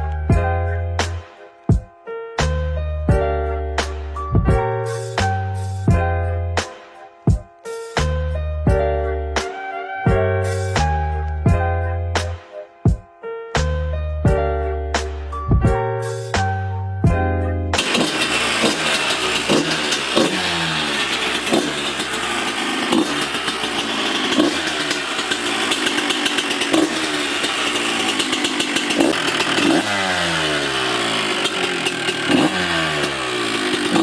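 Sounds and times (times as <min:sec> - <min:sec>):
two-stroke engine revving: 0:17.8 - 0:34.0.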